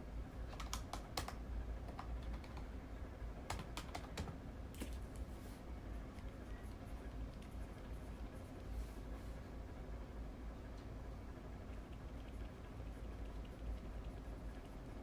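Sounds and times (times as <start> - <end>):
faint low hum: 0.0 - 15.0.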